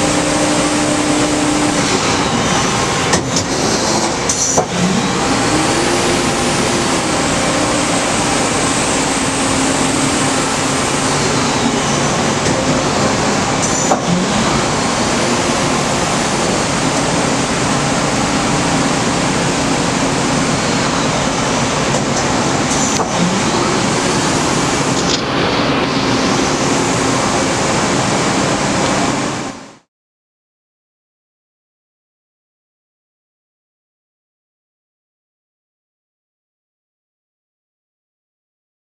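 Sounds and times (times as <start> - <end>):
humming machine tone: 0.0 - 29.2
machine shop rushing noise: 0.0 - 29.9.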